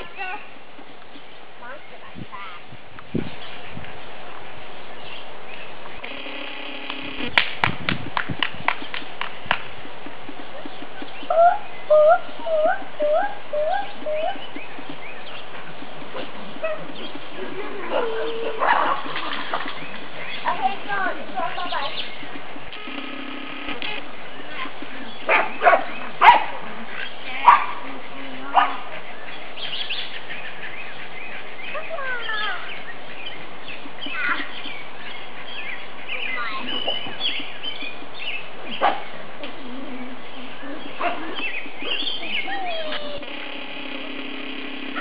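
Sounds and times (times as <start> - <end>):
small birds chirping: 0.0 - 7.6, 8.5 - 45.0
steady outdoor hiss: 0.0 - 45.0
gliding bird calls: 10.4 - 26.2, 40.3 - 45.0.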